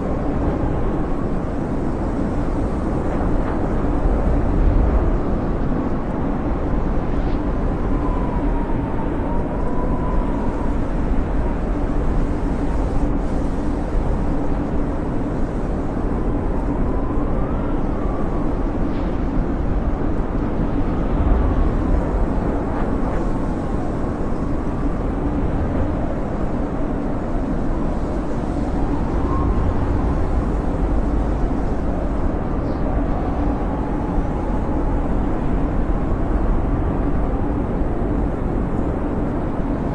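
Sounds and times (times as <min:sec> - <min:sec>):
blizzard wind rumbling: 0:00.0 - 0:39.9
whistling wind howl: 0:00.0 - 0:39.9.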